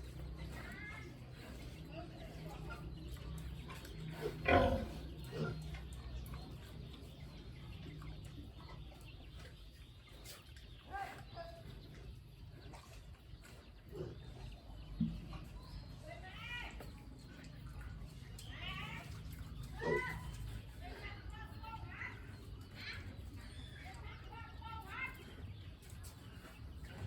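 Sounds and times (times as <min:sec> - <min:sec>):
pigs grunting and squealing: 0:00.0 - 0:07.2, 0:11.2 - 0:14.8, 0:17.6 - 0:21.3.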